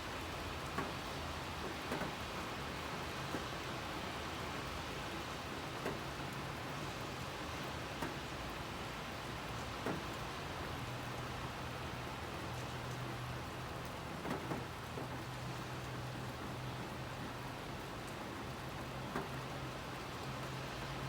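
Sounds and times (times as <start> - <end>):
steady rain falling: 0.0 - 21.0.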